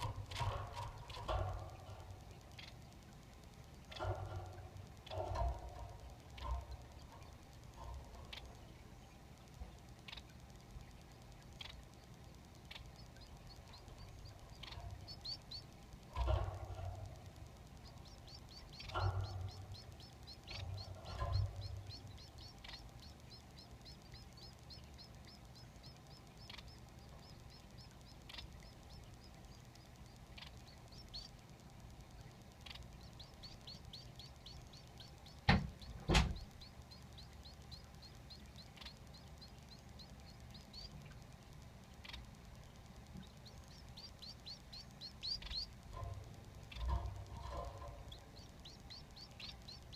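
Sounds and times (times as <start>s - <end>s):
finch chicks chirping: 0.0s - 49.9s
dull knocks: 35.5s - 36.5s.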